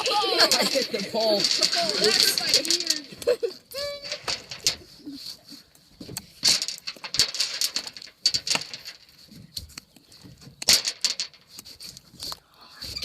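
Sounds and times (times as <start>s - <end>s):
thrown rocks clattering: 0.0s - 5.0s, 6.0s - 9.3s, 10.3s - 11.5s.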